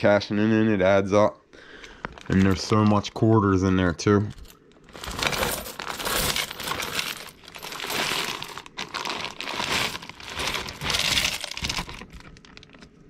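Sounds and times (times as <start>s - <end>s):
coins poured and jingling: 4.9s - 12.0s.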